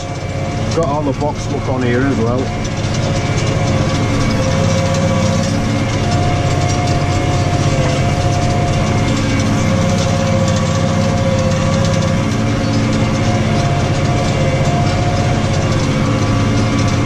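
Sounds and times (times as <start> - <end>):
steady whine: 0.0 - 17.0
tractor engine running under load: 0.0 - 17.0.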